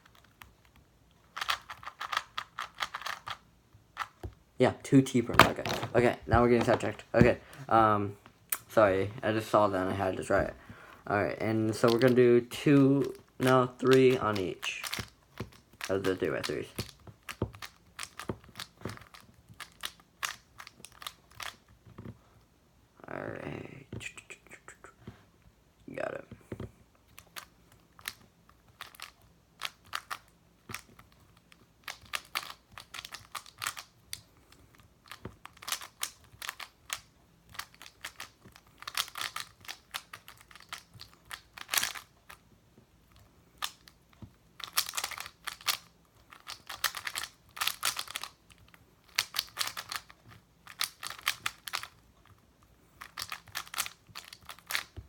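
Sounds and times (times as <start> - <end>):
speed cube clicking turns: 0.0 - 3.4, 13.0 - 21.7, 27.2 - 42.4, 43.2 - 44.0, 44.6 - 52.4, 53.0 - 55.0.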